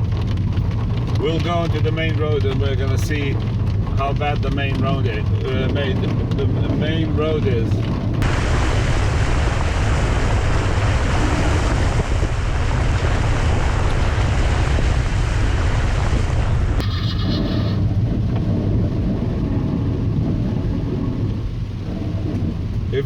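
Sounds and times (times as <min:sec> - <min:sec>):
engine and road rumble: 0:00.0 - 0:23.0
water rushing and spraying: 0:08.2 - 0:23.0.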